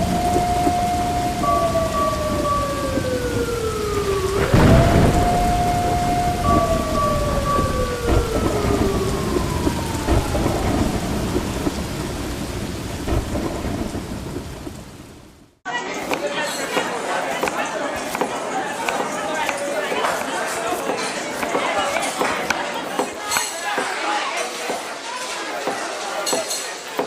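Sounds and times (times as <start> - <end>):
sliding tone: 0.0 - 14.0
thunder crack: 0.0 - 15.6
rain falling: 0.0 - 27.0.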